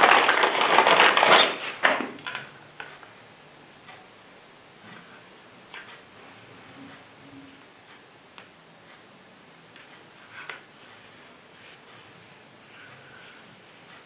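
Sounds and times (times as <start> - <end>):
packaging rustling: 0.0 - 2.4.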